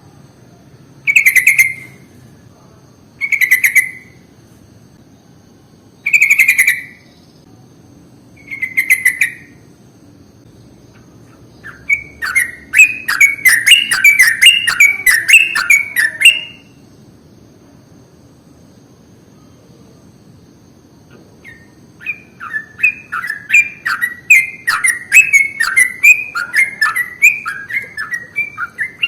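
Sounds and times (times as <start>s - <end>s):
bird singing bubbly notes: 11.6s - 16.6s, 21.5s - 29.0s.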